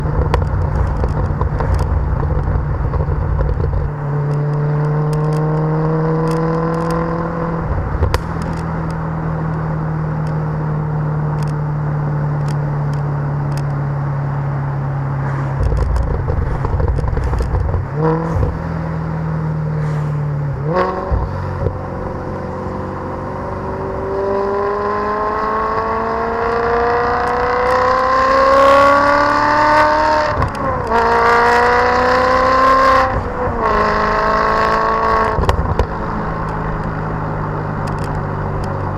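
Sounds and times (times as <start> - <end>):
exhaust crackles: 0.0 - 24.1
car engine accelerating: 0.0 - 38.9.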